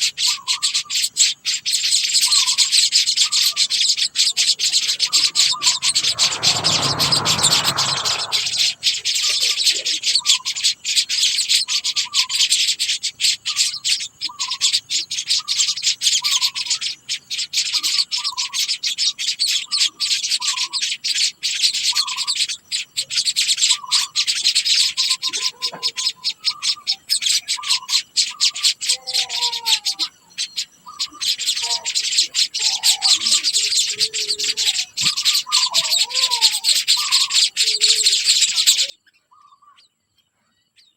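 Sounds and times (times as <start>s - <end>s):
varied bird calls: 0.0s - 40.9s
brief low rumble: 4.9s - 8.9s.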